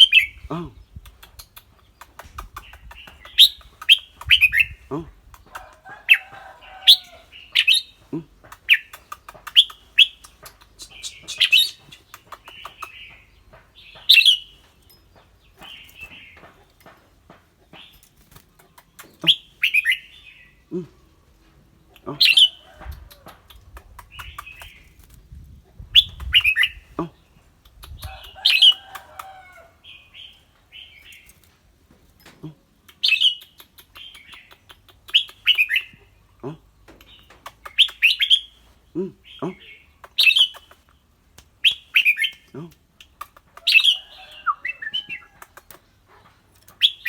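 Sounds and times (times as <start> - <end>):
bird chattering: 0.0 - 13.3, 21.9 - 25.0, 25.8 - 29.4, 32.9 - 47.0
small sharp ticks: 1.0 - 4.4, 8.5 - 13.2, 18.0 - 19.3, 22.8 - 25.2, 27.6 - 29.3, 32.8 - 35.7, 36.9 - 38.1, 40.0 - 43.8, 45.2 - 45.9.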